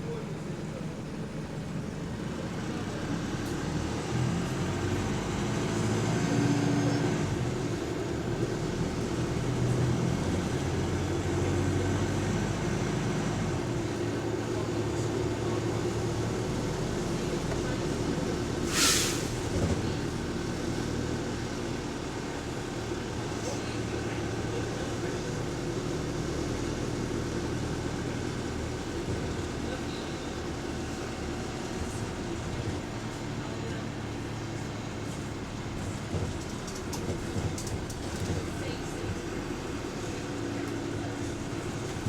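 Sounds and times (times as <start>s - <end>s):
bus engine running: 0.0s - 42.0s
air brake hiss: 18.6s - 19.5s.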